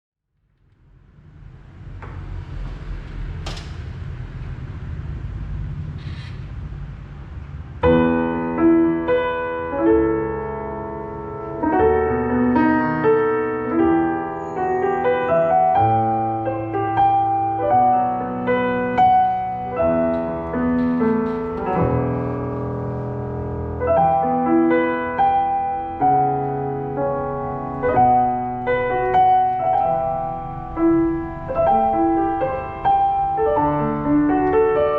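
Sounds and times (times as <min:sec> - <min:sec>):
slow piano chords: 0:06.6 - 0:34.9.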